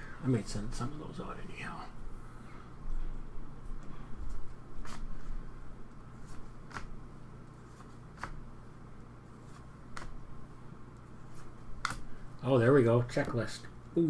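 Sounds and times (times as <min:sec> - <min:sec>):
low steady hum: 0:00.0 - 0:14.0
card snapping: 0:06.3 - 0:06.9, 0:09.9 - 0:10.2, 0:11.8 - 0:12.1.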